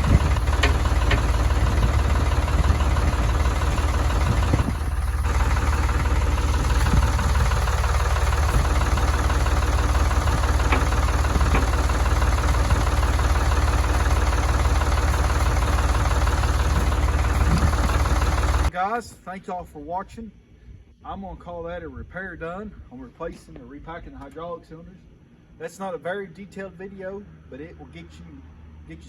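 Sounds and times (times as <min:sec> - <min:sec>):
tractor diesel engine running: 0:00.0 - 0:18.7.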